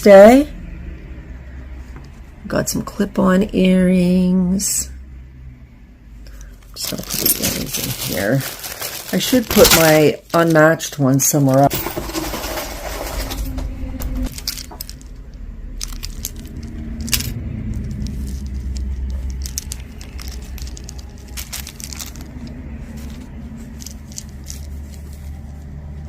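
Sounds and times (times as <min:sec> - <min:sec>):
low steady hum: 0:00.0 - 0:26.0
metal jewelry clicking and jingling: 0:14.2 - 0:25.0.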